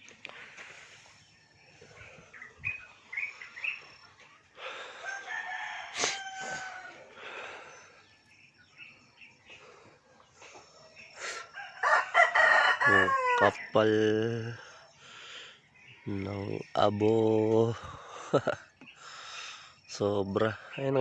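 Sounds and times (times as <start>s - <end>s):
short chirping calls: 0.0s - 4.6s
rooster crowing: 4.6s - 7.4s, 11.3s - 13.8s.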